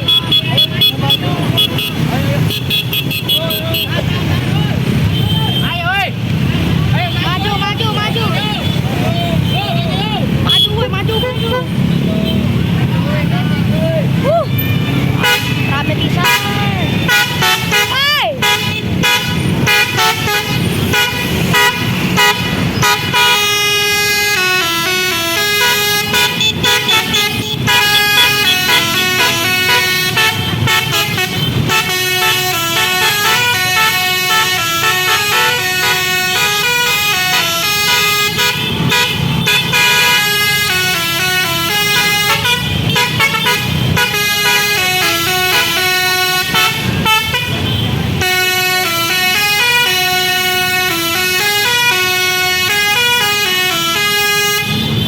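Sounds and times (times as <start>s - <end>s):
multi-tone bus horn tune: 14.7s - 55.0s.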